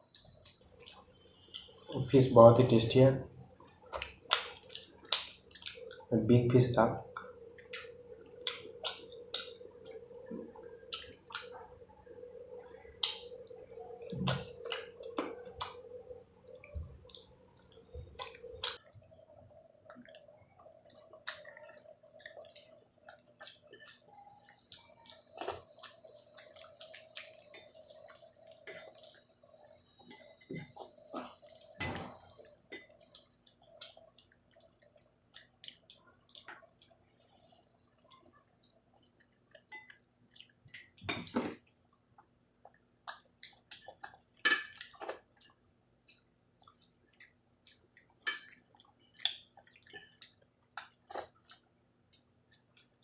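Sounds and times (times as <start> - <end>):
wet chewing: 3.6 - 6.2, 7.0 - 53.0
lip smacks: 7.2 - 9.6, 13.0 - 15.8, 16.5 - 29.2.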